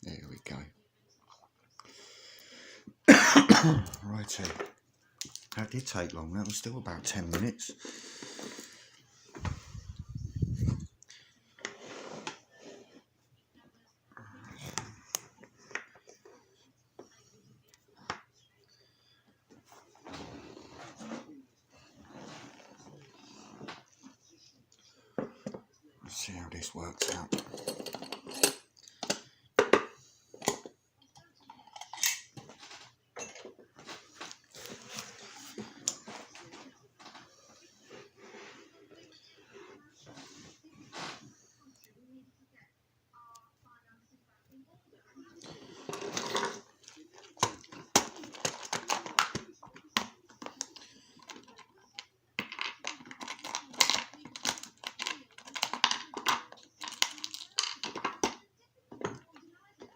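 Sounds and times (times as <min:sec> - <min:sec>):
scraping and rustling: 0:11.6 - 0:13.0, 0:19.6 - 0:24.0.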